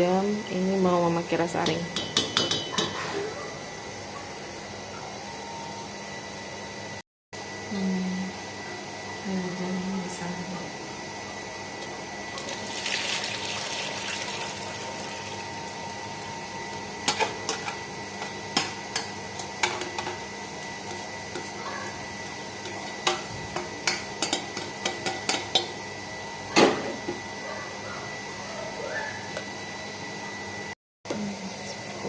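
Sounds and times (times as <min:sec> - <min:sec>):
utensils clinking against pot: 0:01.6 - 0:03.3, 0:22.6 - 0:25.8.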